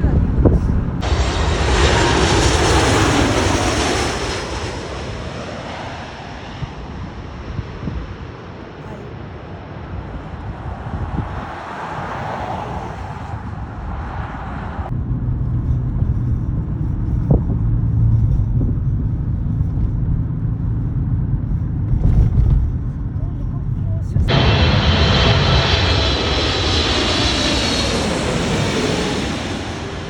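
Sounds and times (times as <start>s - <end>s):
low steady rumble with hum: 0.0s - 5.9s, 14.9s - 29.2s
jet airliner roar: 0.0s - 30.0s.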